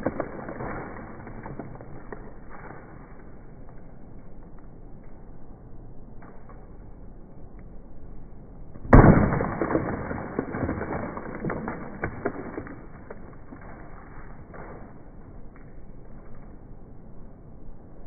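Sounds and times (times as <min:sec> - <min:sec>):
debris clattering and breaking: 0:00.0 - 0:02.9, 0:08.9 - 0:14.8
heavy smash: 0:08.9 - 0:13.1.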